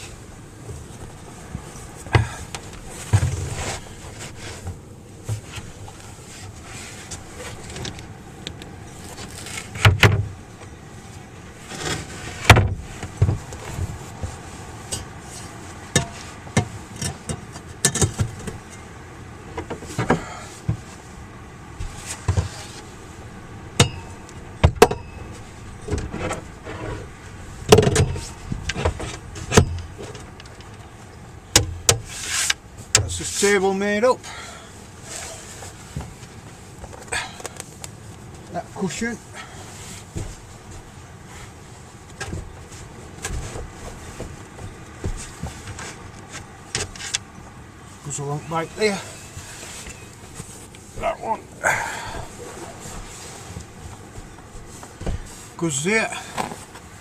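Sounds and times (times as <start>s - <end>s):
objects being handled and moved: 0.0s - 18.8s, 19.5s - 23.2s, 34.9s - 57.0s
low steady rumble: 0.0s - 57.0s.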